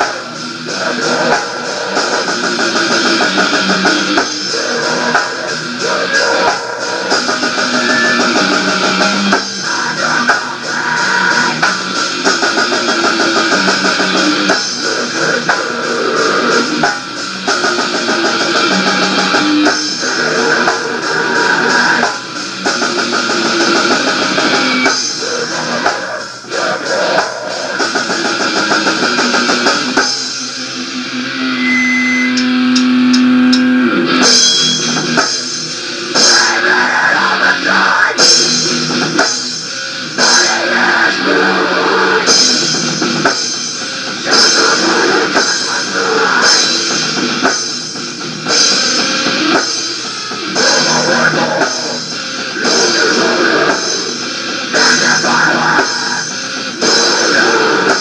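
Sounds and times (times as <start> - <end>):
rock band playing: 0.0 - 58.0
held guitar note: 31.3 - 33.9.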